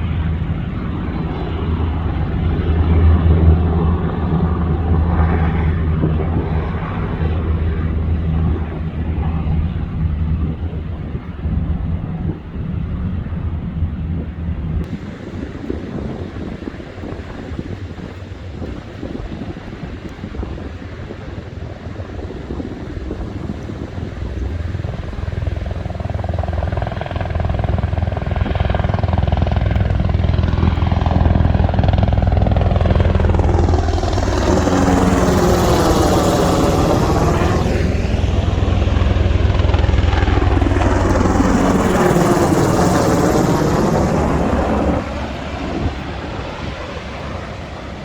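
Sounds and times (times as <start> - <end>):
helicopter rotors thudding: 22.3 - 48.0.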